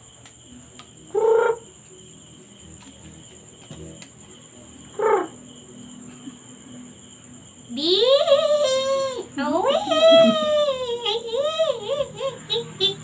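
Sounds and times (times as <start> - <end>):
person making silly noises: 8.0 - 13.0.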